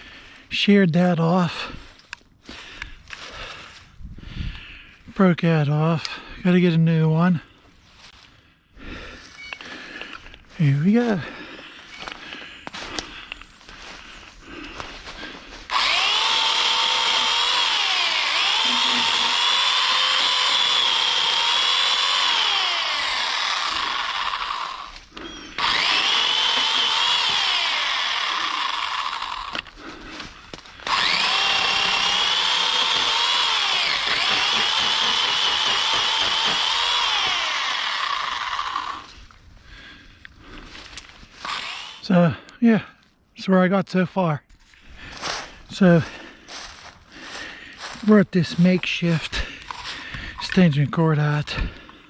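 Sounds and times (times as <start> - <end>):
chainsaw cutting wood: 14.9 - 39.3, 40.8 - 42.2, 45.2 - 50.7.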